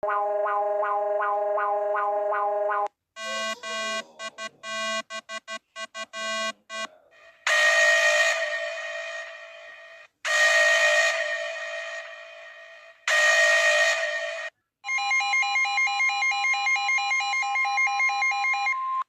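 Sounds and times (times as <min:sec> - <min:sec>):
electronic alarm beeps: 0:00.0 - 0:06.9, 0:14.9 - 0:19.0
buzzy sustained alarm tone: 0:07.4 - 0:14.5.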